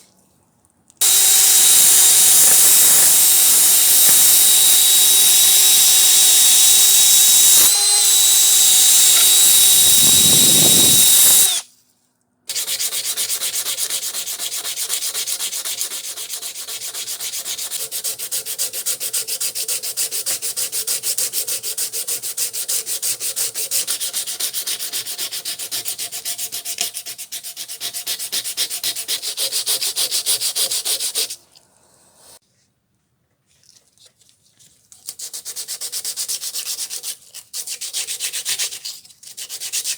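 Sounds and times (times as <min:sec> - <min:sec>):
power tool whining: 0:01.0 - 0:11.6
rasping sanding strokes: 0:01.0 - 0:11.6, 0:12.5 - 0:31.5, 0:35.1 - 0:39.9.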